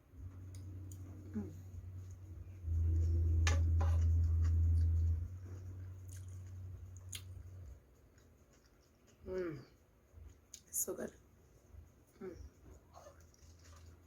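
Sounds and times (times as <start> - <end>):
steady low hum: 0.0 - 14.0
person chewing and eating: 2.8 - 10.6, 12.5 - 14.0.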